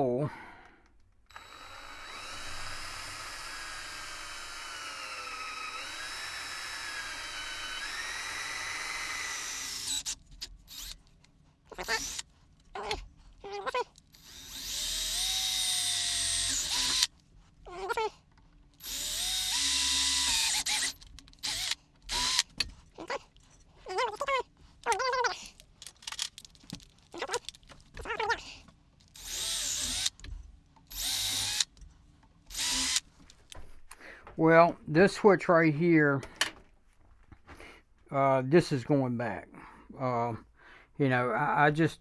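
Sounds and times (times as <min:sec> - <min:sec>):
power drill boring: 0:01.3 - 0:11.1, 0:11.8 - 0:13.0, 0:13.9 - 0:17.1, 0:18.8 - 0:22.7, 0:24.0 - 0:28.4, 0:29.1 - 0:30.2, 0:30.9 - 0:31.8, 0:32.5 - 0:33.6.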